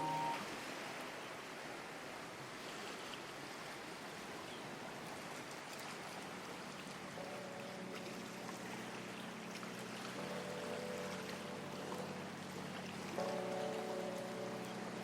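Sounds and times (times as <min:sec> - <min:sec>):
faint steady tones: 0:00.0 - 0:00.7, 0:07.0 - 0:15.0
water lapping against pier: 0:00.0 - 0:15.0.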